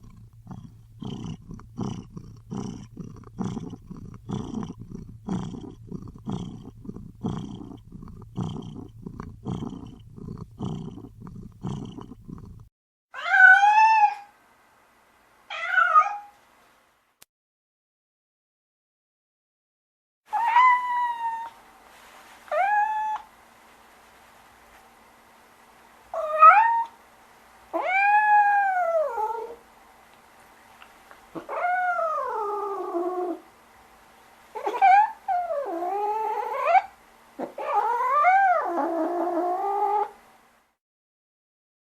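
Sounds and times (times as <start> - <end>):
cat purring: 0.0 - 12.7, 31.3 - 33.4, 34.6 - 40.2
cat meowing: 13.2 - 14.3, 15.5 - 16.3, 20.3 - 21.5, 27.8 - 29.6.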